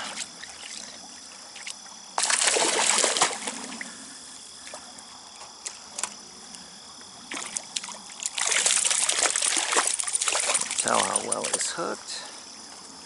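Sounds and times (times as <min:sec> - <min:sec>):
fish splashing at water surface: 0:02.2 - 0:03.8, 0:07.2 - 0:11.6.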